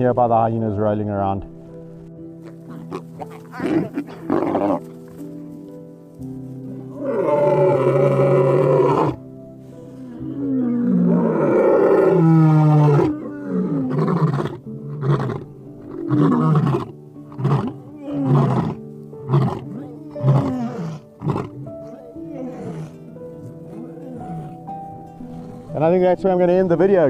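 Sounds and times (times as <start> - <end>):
background music: 0.0 - 27.0
lion roaring: 2.7 - 4.8, 7.0 - 9.2, 10.0 - 26.0.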